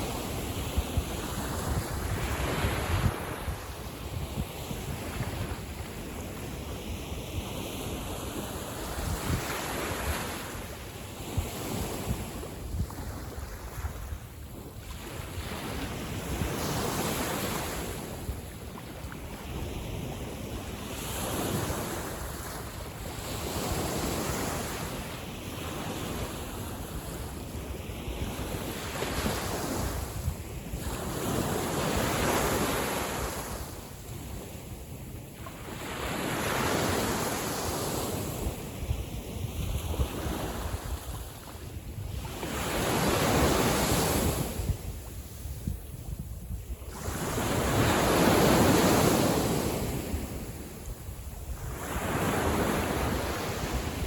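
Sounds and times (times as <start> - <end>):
wind rumbling on microphone: 0.0 - 54.0.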